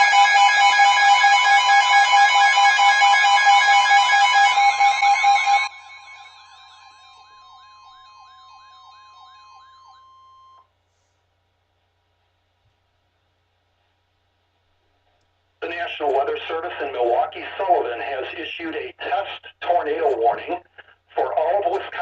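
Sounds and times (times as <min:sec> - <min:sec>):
warbling siren-like alert: 0:00.0 - 0:10.0
steady alarm tone: 0:00.0 - 0:10.7.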